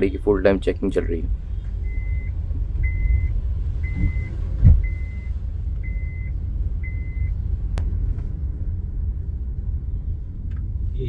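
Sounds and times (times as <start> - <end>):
low vehicle rumble: 0.0 - 11.0
reversing beeper beeping: 1.8 - 7.3
dull thud: 3.9 - 5.0.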